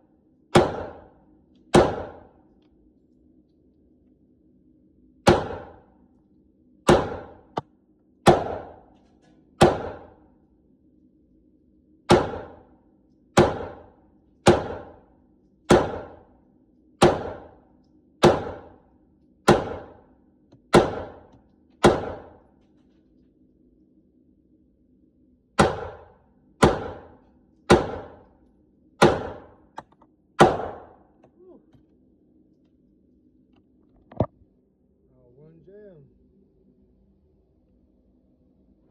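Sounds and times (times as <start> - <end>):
pistol shots with echo: 0.5 - 1.1, 1.7 - 2.3, 5.3 - 5.8, 6.9 - 7.6, 8.2 - 8.9, 9.6 - 10.2, 12.1 - 12.6, 13.4 - 15.0, 15.7 - 16.2, 17.0 - 17.6, 18.2 - 18.7, 19.5 - 20.0, 20.7 - 22.4, 25.6 - 28.2, 29.0 - 29.6, 30.4 - 31.0.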